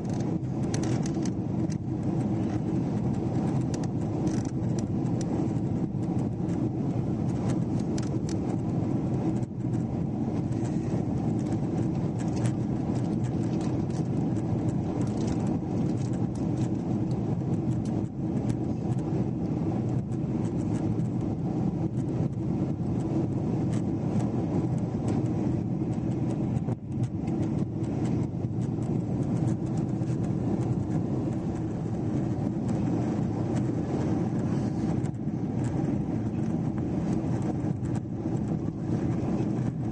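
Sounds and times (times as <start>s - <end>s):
drone of engines and airflow: 0.0s - 39.9s.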